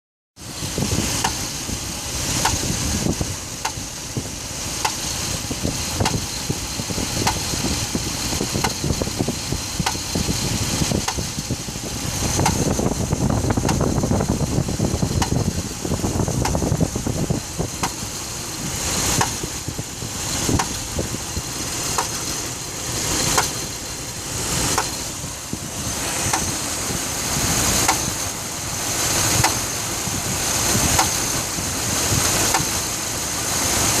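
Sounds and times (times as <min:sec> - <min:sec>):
engine running: 0:00.4 - 0:34.0
engine knocking clicks: 0:00.8 - 0:34.0.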